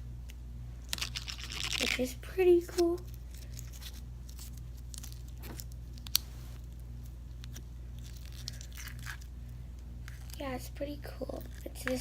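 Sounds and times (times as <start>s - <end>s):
steady low hum: 0.0s - 12.0s
sticky slime crackles: 7.4s - 9.3s.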